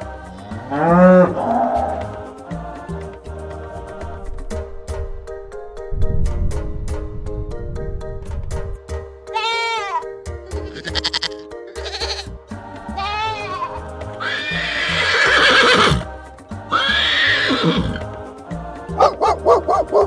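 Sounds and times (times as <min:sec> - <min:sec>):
background music: 0:00.0 - 0:20.0
farm animal calls: 0:09.3 - 0:12.3, 0:13.0 - 0:16.0.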